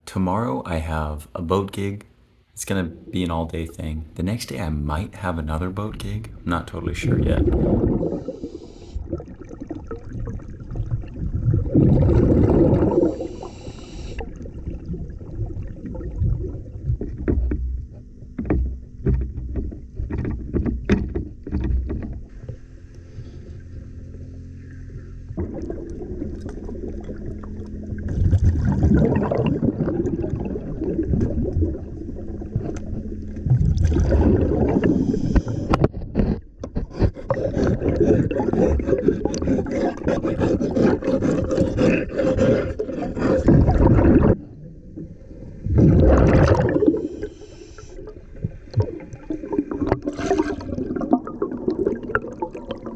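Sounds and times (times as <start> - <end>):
motorboat engine running: 17.4 - 28.6, 31.6 - 33.5.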